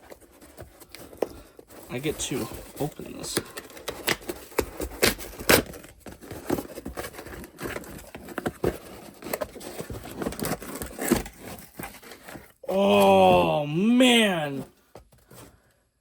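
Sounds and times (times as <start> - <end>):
packaging rustling: 0.0 - 12.6.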